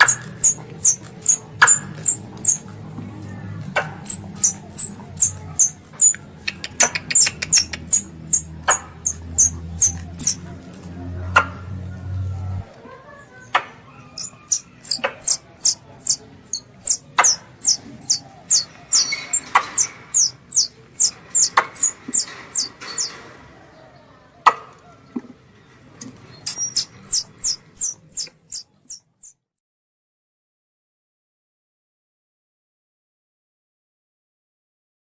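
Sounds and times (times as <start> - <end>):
squirrel call chirps: 0.0 - 2.6, 4.0 - 10.4, 13.9 - 23.2, 26.4 - 29.3
sharp clicks: 3.7 - 10.4.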